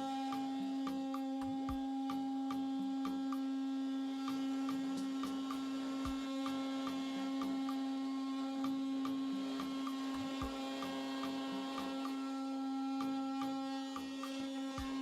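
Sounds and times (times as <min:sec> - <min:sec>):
oscillating multi-tool cutting board: 0:00.0 - 0:15.0.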